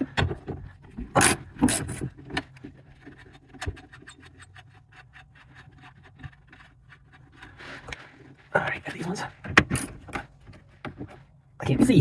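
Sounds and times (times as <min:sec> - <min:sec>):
metal scraping: 0:01.1 - 0:10.1.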